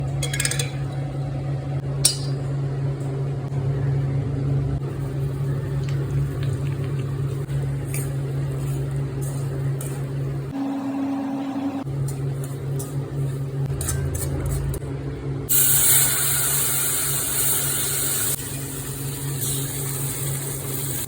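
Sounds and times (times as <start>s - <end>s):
kitchen appliance humming: 0.0s - 21.0s
kitchenware clinking: 0.2s - 0.8s.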